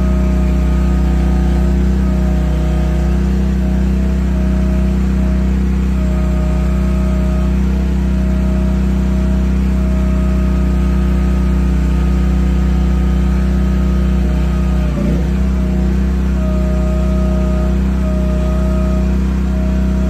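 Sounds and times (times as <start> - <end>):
excavator engine running: 0.0 - 20.0.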